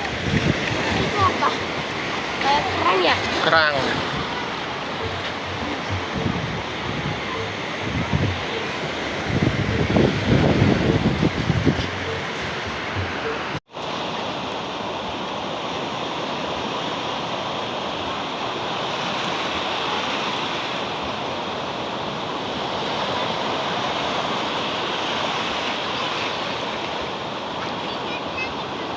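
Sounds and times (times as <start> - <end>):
wind buffeting microphone: 0.0 - 13.6
sea surf breaking on beach: 0.0 - 28.9.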